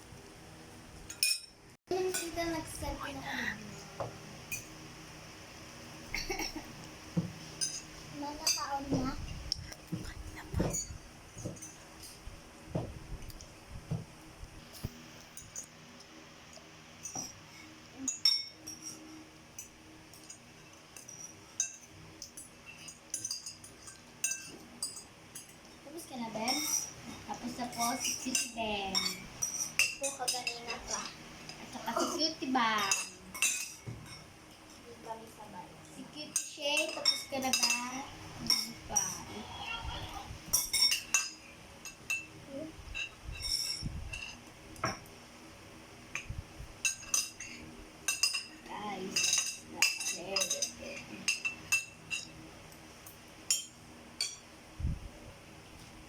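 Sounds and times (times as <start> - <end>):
forks clinking on plates: 7.6 - 8.7, 17.0 - 19.0, 19.6 - 25.7, 26.5 - 32.1, 32.8 - 34.3, 36.3 - 39.2, 40.5 - 42.3, 43.0 - 45.1, 46.2 - 52.4, 53.5 - 54.4.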